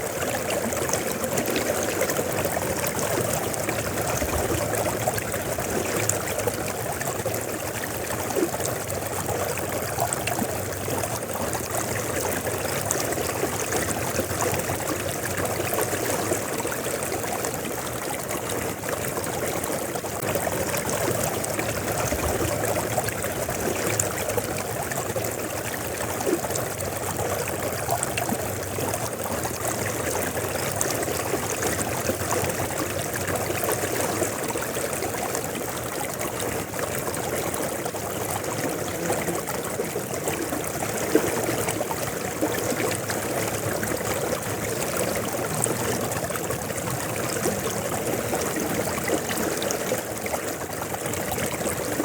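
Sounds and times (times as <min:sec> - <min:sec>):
river water flowing over stones: 0:00.0 - 0:52.0.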